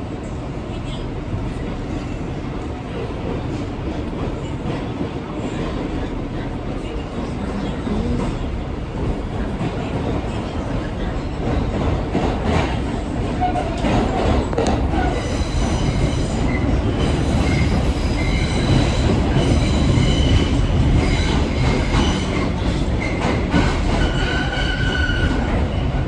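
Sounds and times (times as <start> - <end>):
subway train rumbling on rails: 0.0 - 26.0.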